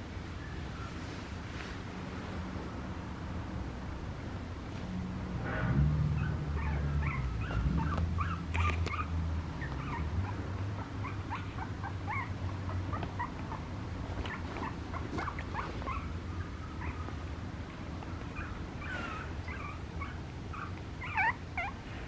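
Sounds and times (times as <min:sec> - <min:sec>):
puppy whimpering: 0:06.2 - 0:16.2, 0:16.8 - 0:17.2, 0:18.2 - 0:21.9.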